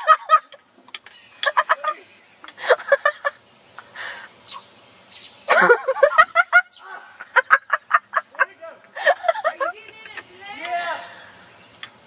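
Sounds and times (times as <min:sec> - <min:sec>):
bird calling loudly: 0:01.0 - 0:08.3.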